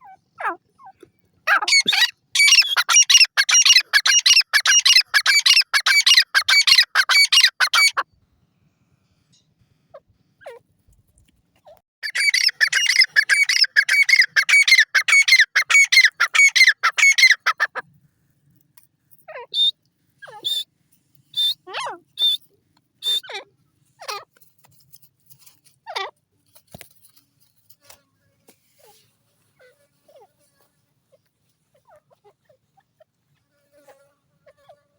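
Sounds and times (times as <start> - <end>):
francolin calling: 1.5 - 8.0, 12.0 - 17.6.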